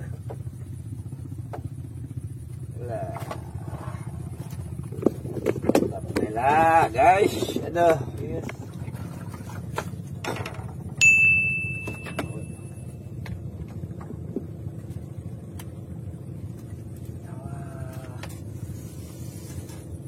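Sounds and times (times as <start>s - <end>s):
low engine hum: 0.0s - 20.0s
ringing metallic clink: 11.0s - 13.1s.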